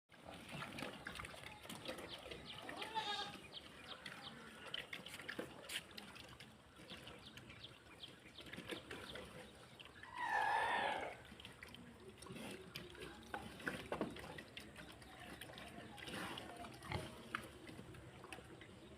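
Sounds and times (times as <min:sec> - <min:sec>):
livestock calling: 0:02.6 - 0:03.4, 0:10.0 - 0:11.2.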